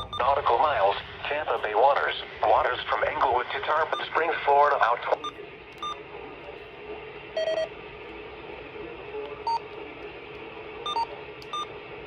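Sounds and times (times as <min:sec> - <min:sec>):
short electronic beeps: 0:00.0 - 0:00.3, 0:05.2 - 0:06.0, 0:10.9 - 0:11.7.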